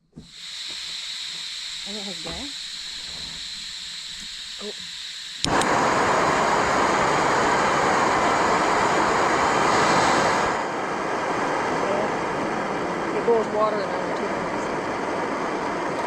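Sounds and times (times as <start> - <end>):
gas burner rushing: 0.0 - 16.0
stove igniter click: 5.4 - 5.8.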